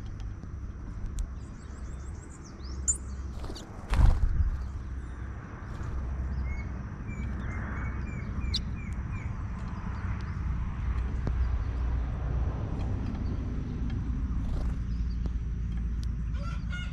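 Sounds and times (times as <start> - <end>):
steady low rumble: 0.0 - 16.4
songbirds whistling: 1.4 - 5.2, 6.3 - 9.4
high bird chirps: 2.3 - 3.8.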